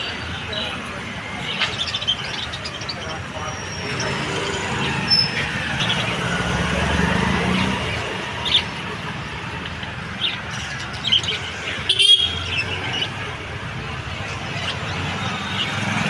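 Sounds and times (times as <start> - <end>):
parrots chirping and squawking: 7.4 - 8.9, 10.0 - 13.4.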